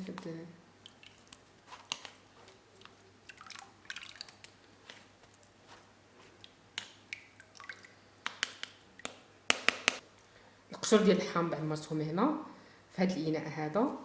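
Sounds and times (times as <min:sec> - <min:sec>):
crackly squishes: 0:00.1 - 0:09.2
wet squelches and drips: 0:00.1 - 0:09.3.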